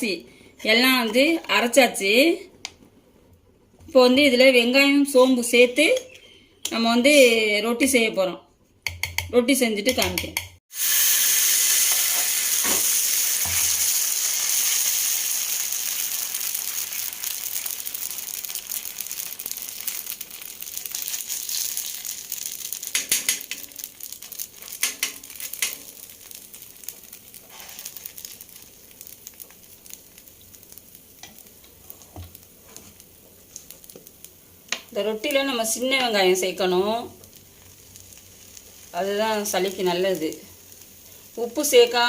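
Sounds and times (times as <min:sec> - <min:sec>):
roti sizzling on a hot pan: 0:10.6 - 0:42.0.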